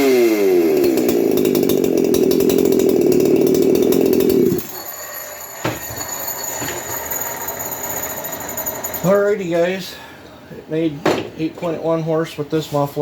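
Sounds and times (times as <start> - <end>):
chainsaw running wide open: 0.0 - 9.2.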